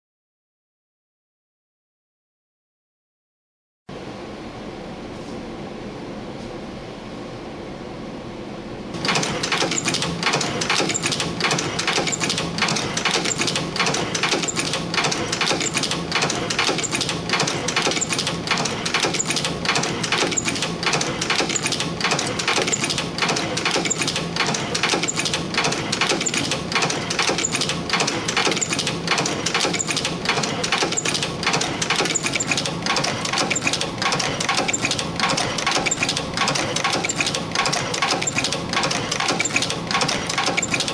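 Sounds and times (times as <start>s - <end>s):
spring making machine clattering: 9.0s - 40.9s.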